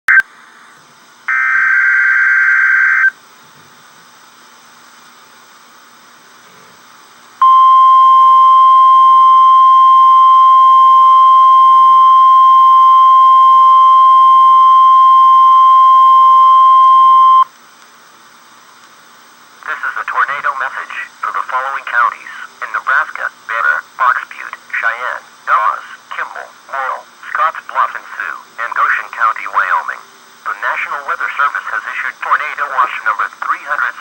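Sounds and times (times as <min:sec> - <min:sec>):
steady single-pitch alert tone: 0:07.4 - 0:17.5.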